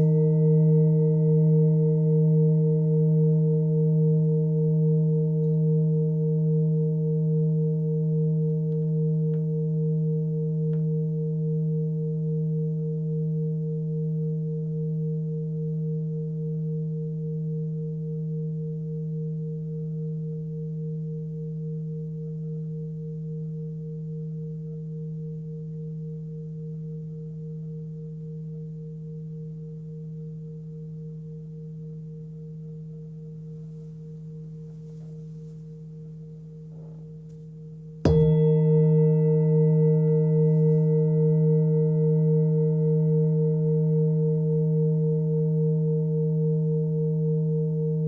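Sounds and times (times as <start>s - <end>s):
singing bowl ringing: 0.0s - 15.7s, 38.0s - 47.7s.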